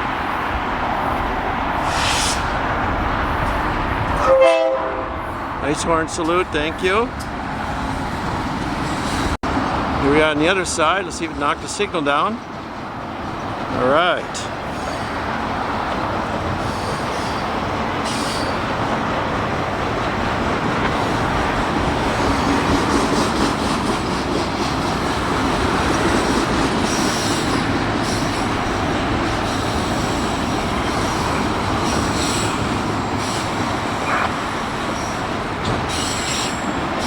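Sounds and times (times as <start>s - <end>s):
freight cars rumbling on rails: 0.0s - 37.0s
high-pitched wheel squeals: 30.8s - 35.3s.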